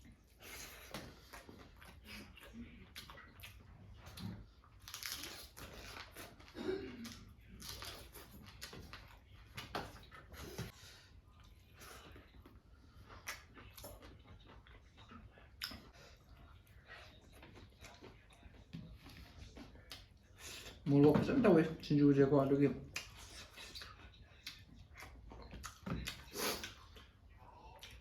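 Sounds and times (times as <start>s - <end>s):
person chewing and biting: 0.1s - 10.8s, 11.4s - 15.9s, 22.9s - 28.0s.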